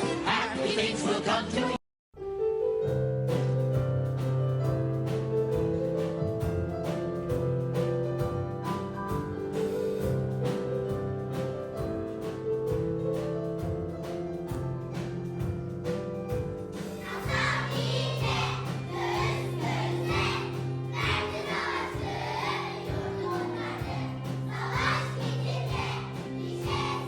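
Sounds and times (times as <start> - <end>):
group of voices singing: 17.0 - 27.0.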